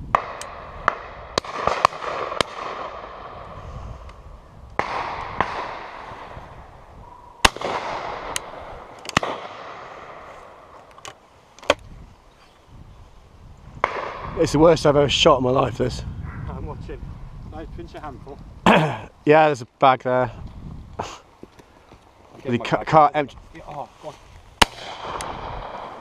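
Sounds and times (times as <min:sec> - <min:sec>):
rolling echo of gunshots: 0:00.1 - 0:03.4, 0:04.8 - 0:06.4, 0:07.4 - 0:10.8, 0:13.8 - 0:14.4, 0:24.6 - 0:26.0
shotgun shots: 0:00.2 - 0:03.3, 0:04.8 - 0:06.3, 0:07.4 - 0:10.3, 0:13.8 - 0:14.4, 0:24.6 - 0:26.0.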